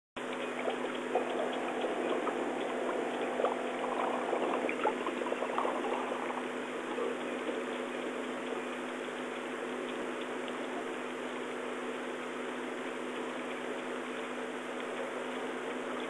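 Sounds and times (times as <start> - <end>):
engine humming: 0.2 - 8.8
water splashing: 0.2 - 9.5.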